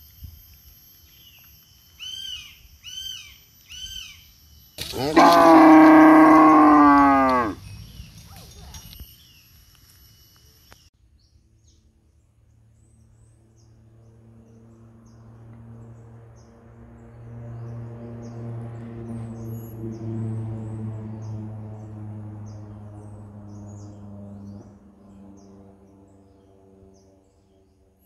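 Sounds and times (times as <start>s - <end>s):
cow mooing: 4.8s - 7.6s
low droning hum: 10.7s - 28.0s.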